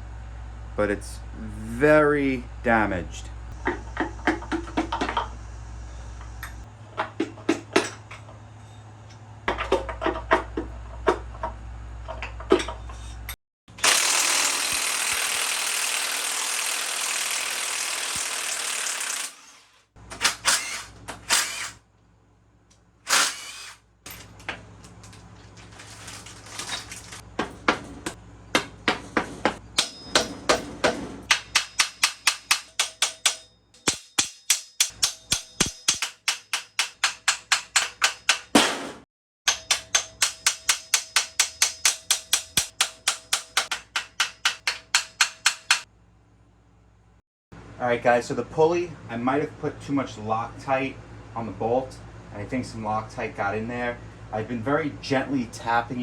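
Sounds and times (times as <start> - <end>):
hand tools clicking and knocking: 3.6 - 5.3, 23.1 - 38.7, 39.5 - 45.9
power tool running: 13.7 - 21.8, 23.0 - 23.8.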